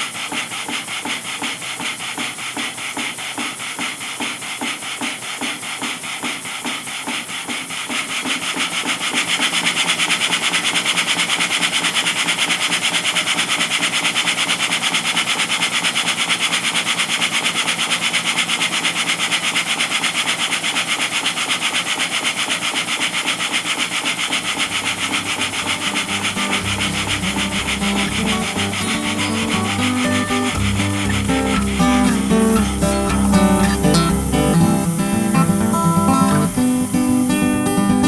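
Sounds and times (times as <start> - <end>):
model steam engine puffing: 0.0 - 38.0
steady air hiss: 0.0 - 38.0.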